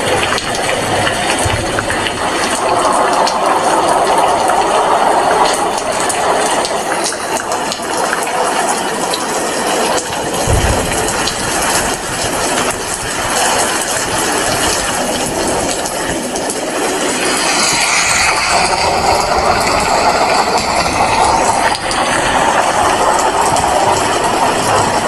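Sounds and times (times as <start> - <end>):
rain falling: 0.0 - 25.0
low thump: 10.3 - 13.2.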